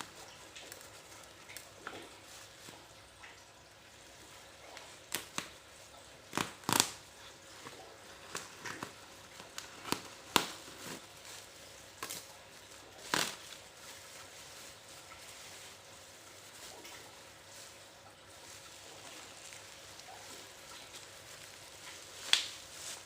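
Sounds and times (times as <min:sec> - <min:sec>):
package being handled and opened: 0:06.3 - 0:23.0.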